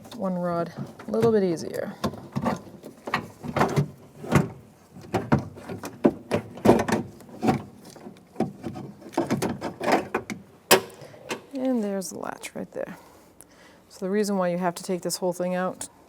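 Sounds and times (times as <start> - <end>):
car door parts clicking and rattling: 2.0 - 11.5.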